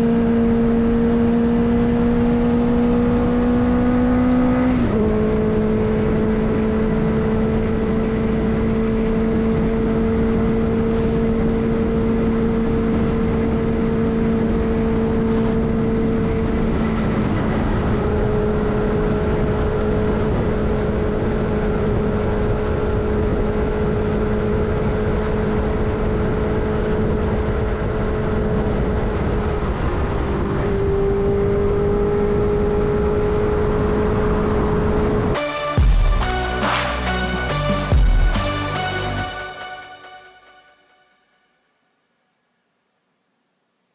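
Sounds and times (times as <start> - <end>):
motorcycle engine cruising: 0.0 - 11.2.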